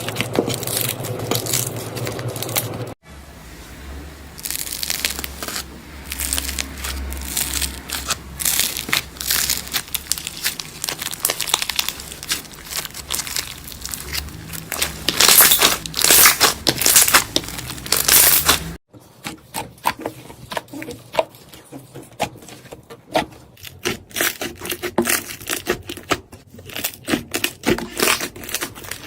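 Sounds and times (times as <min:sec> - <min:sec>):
crunchy slime squeezed by hand: 0:04.4 - 0:18.8.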